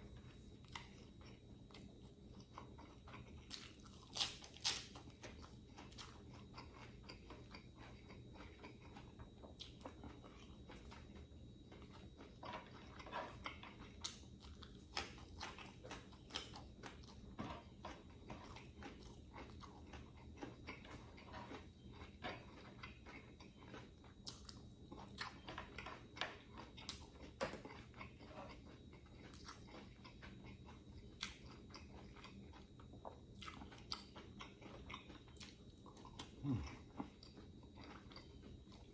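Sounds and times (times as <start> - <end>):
person biting and chewing: 3.4 - 6.9.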